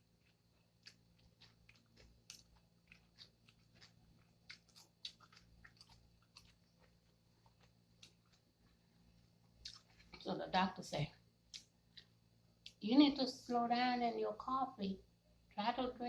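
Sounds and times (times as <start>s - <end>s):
mouth chewing food: 0.0s - 10.3s.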